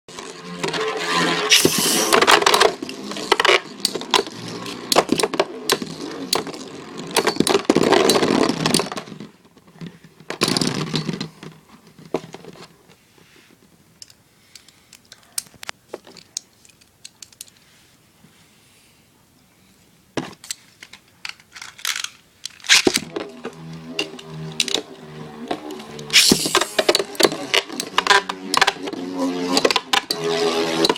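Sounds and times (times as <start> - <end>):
spinning tops clashing and grinding: 0.2 - 9.0, 21.6 - 30.9.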